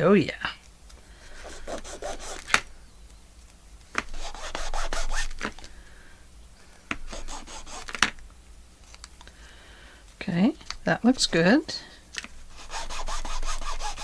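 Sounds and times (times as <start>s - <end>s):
paper rubbing and scraping: 1.4s - 2.6s, 4.0s - 5.6s, 7.1s - 8.1s, 12.5s - 14.0s.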